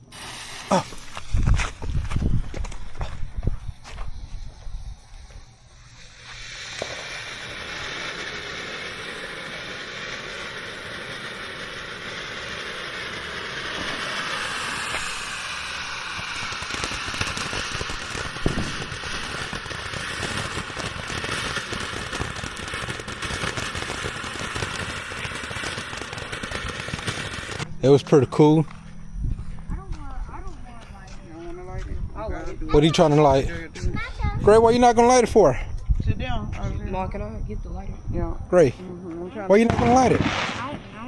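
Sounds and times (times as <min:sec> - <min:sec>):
firework fountain hissing crackle: 0:00.0 - 0:28.0, 0:31.5 - 0:35.6, 0:38.5 - 0:41.0
sharp firework pops: 0:00.1 - 0:27.7, 0:39.6 - 0:41.0.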